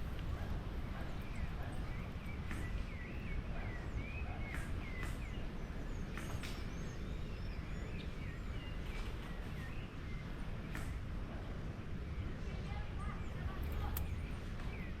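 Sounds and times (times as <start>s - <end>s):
small birds chirping: 0.0s - 15.0s
wind rumble on microphone: 0.0s - 15.0s
sharp clicks: 13.6s - 14.3s.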